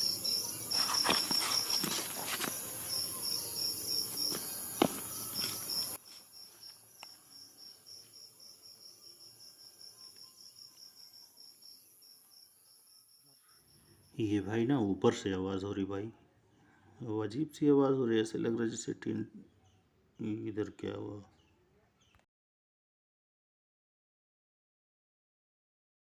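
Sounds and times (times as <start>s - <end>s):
background hiss: 0.0s - 14.7s
crickets chirping: 0.0s - 14.7s.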